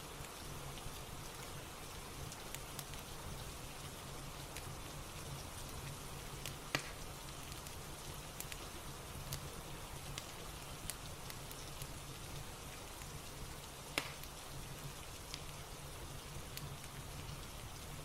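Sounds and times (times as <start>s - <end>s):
rain falling: 0.0s - 18.0s
sharp pop: 14.0s - 14.2s.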